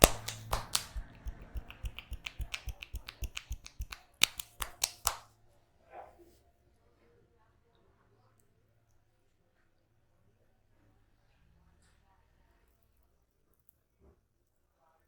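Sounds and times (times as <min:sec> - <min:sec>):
hands tapping on head massage: 0:00.0 - 0:05.2.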